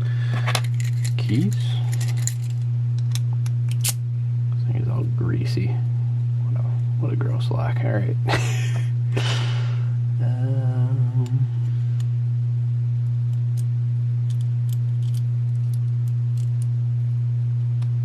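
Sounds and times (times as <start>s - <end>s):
low electrical hum: 0.0s - 18.0s
man humming: 8.3s - 12.0s.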